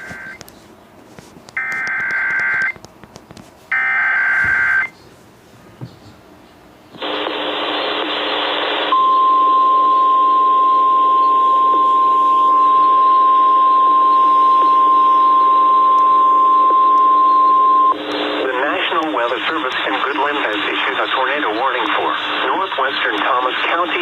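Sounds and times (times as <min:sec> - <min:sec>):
radio static hiss: 0:06.9 - 0:09.1, 0:13.9 - 0:24.0
steady alarm tone: 0:08.9 - 0:18.1.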